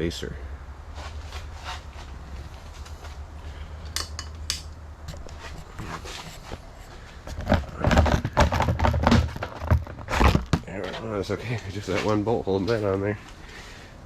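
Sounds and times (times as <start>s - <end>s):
plastic panels knocking and clattering: 7.3s - 10.7s.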